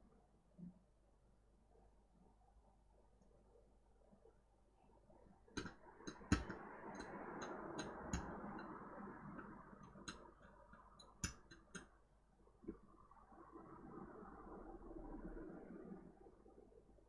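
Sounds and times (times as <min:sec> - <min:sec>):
metal tools tapping on circuit board: 0:05.6 - 0:07.1, 0:07.8 - 0:08.4, 0:09.8 - 0:11.9.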